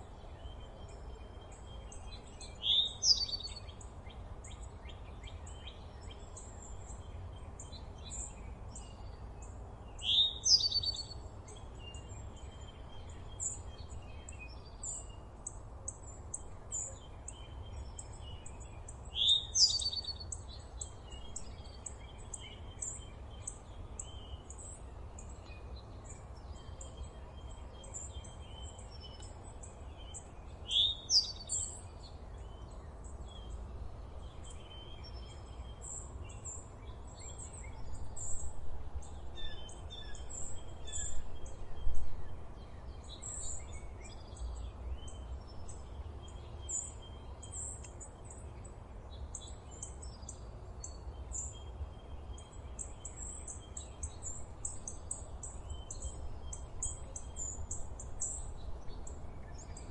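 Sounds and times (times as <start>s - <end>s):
low background noise: 0.0s - 59.9s.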